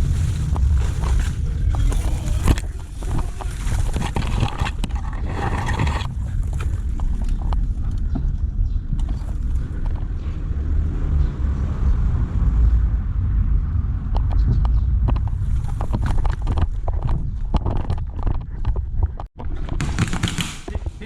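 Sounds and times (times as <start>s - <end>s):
footsteps through vegetation: 0.0s - 4.7s
wind rumble on microphone: 0.0s - 19.8s.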